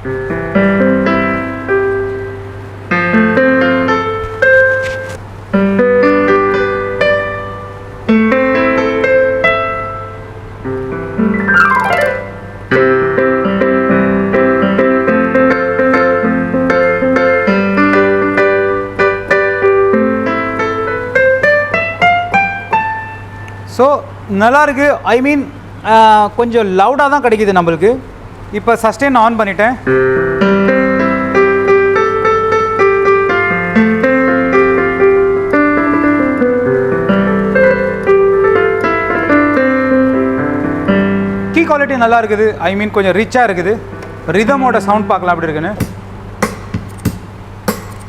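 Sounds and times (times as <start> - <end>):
electric piano chords and notes: 0.0 - 23.7, 29.8 - 45.9
piano melody with sustain: 11.2 - 13.4.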